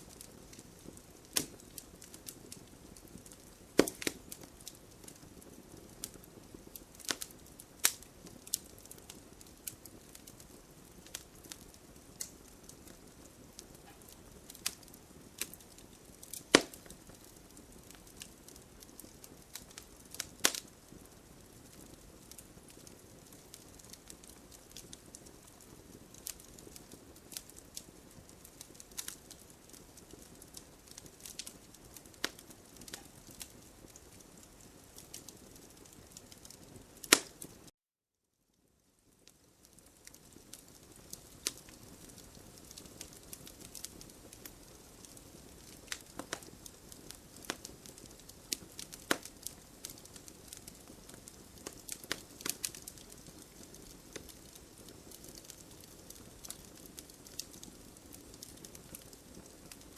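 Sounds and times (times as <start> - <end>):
flames hissing: 0.0 - 37.3
campfire crackling and popping: 0.0 - 37.7, 38.6 - 59.9.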